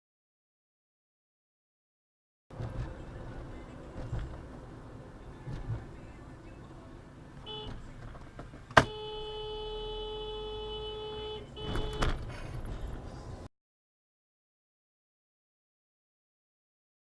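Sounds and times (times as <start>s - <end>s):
traffic rumble: 2.5s - 13.5s
car horn: 7.4s - 8.0s, 8.7s - 12.3s.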